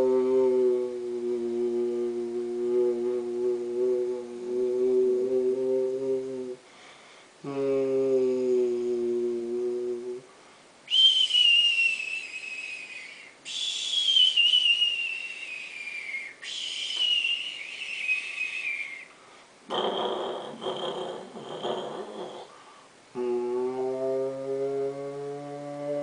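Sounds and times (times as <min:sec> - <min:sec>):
person humming: 0:00.0 - 0:06.6, 0:07.4 - 0:10.3, 0:19.7 - 0:26.0
person whistling sliding downward: 0:10.9 - 0:19.1.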